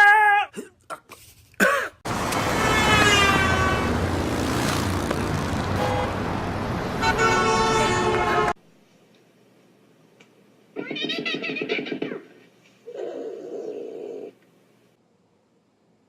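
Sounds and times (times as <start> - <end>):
road noise: 2.0 - 8.6
vehicle horn honking: 2.4 - 4.1, 5.7 - 6.4, 7.0 - 8.6.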